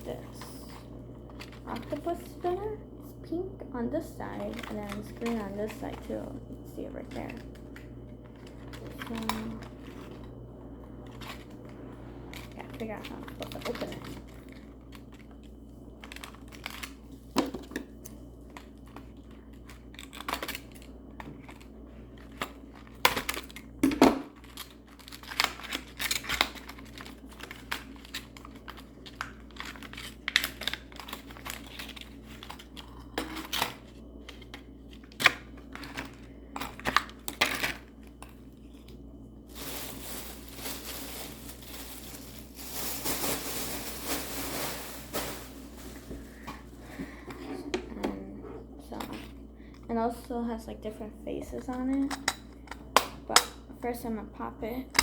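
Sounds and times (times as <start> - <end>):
packaging rustling: 11.0 - 23.7, 24.3 - 47.7
packaging crinkling and tearing: 12.3 - 47.0.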